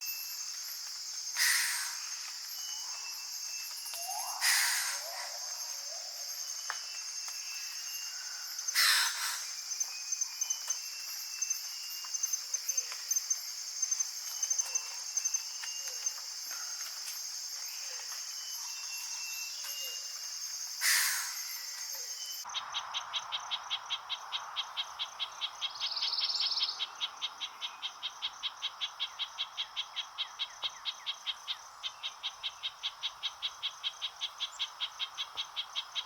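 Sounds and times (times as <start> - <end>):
insects chirring chorus: 0.0 - 36.0
whistled bird notes: 3.9 - 6.3
harsh bird calls: 4.0 - 5.4, 8.7 - 9.5.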